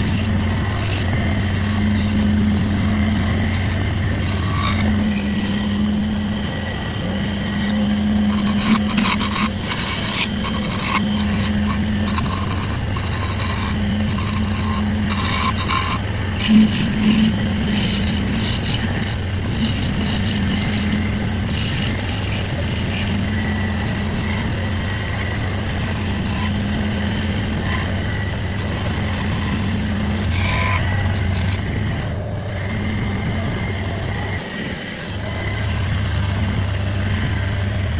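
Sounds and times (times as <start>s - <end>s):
wood being cut and scraped: 0.0s - 33.2s, 34.3s - 37.9s
power tool motor humming: 0.0s - 37.9s.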